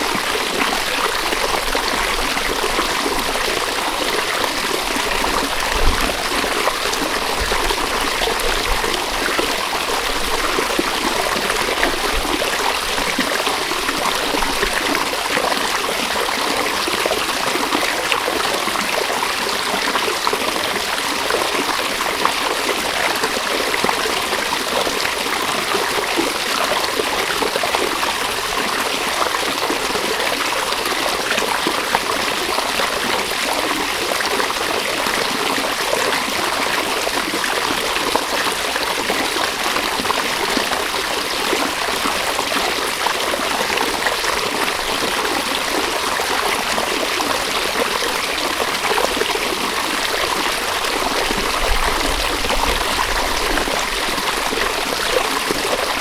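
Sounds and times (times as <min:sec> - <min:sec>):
river water rushing: 0:38.8 - 0:56.0.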